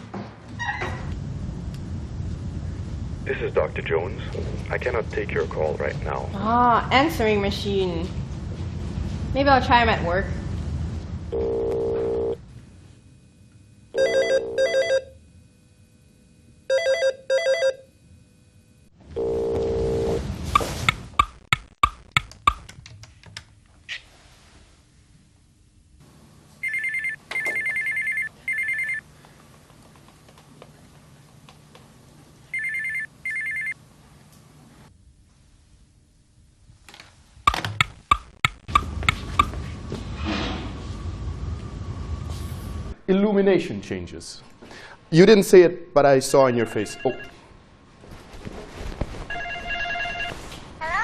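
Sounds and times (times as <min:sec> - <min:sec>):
phone ringing: 0:11.3 - 0:12.4, 0:13.9 - 0:15.2, 0:16.7 - 0:17.9, 0:19.1 - 0:20.2, 0:26.6 - 0:29.0, 0:32.5 - 0:33.8, 0:46.5 - 0:47.5, 0:49.3 - 0:50.4
steady phone tone: 0:11.3 - 0:12.4, 0:13.9 - 0:15.4, 0:16.6 - 0:18.2, 0:19.0 - 0:20.2, 0:26.6 - 0:29.1, 0:32.5 - 0:33.8, 0:46.5 - 0:47.5, 0:49.3 - 0:50.4
electronic ringing beeps: 0:14.0 - 0:15.2, 0:16.7 - 0:17.9, 0:26.6 - 0:29.0, 0:32.5 - 0:33.8, 0:46.5 - 0:47.4.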